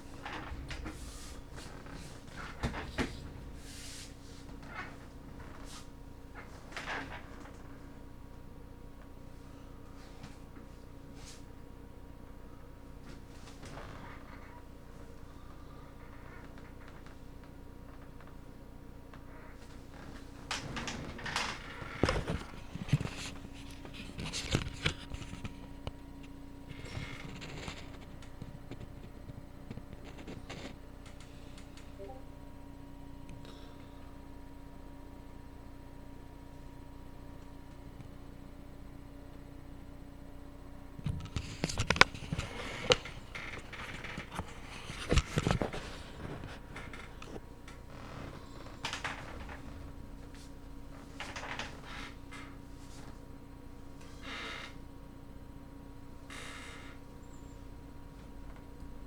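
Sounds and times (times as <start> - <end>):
rustling and handling noises: 0.0 - 8.0, 19.3 - 32.2, 41.0 - 54.5
steady low hum: 0.0 - 59.0.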